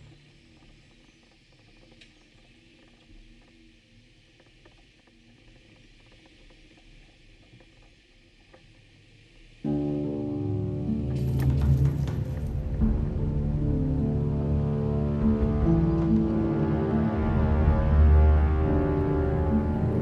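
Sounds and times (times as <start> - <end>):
faint clicks: 0.0 - 9.0
low hum: 9.8 - 20.0.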